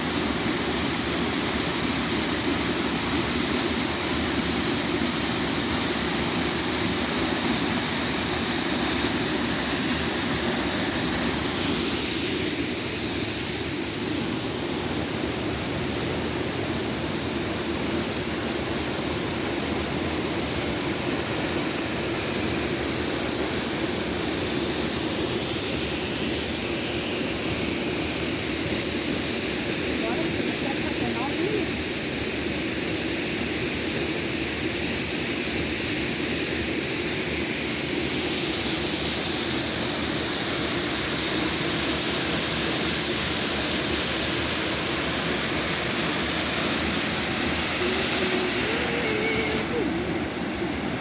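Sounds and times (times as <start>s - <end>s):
waterfall rushing: 0.0s - 32.6s, 37.8s - 51.0s.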